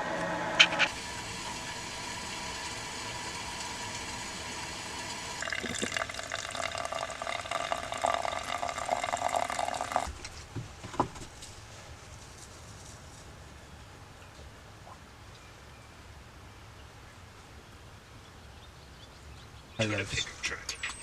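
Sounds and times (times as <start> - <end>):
water pouring into container: 0.9 - 10.2.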